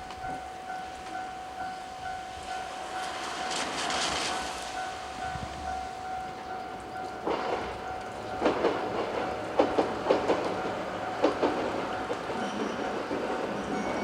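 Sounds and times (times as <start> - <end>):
level crossing warning bell: 0.0 - 14.0
train wheels clacking over rail joints: 2.9 - 5.2, 6.3 - 14.0.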